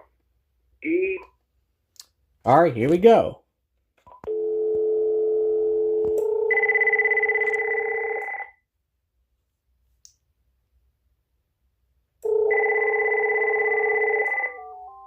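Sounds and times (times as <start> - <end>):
telephone dial tone: 4.2 - 8.6, 12.2 - 14.9
cordless phone ringer trilling: 12.3 - 14.7.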